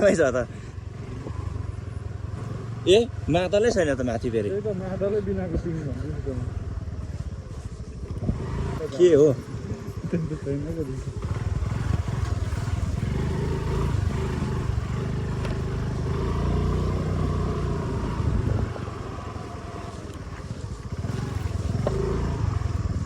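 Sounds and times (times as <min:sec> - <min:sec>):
motor scooter engine running: 0:00.0 - 0:23.0.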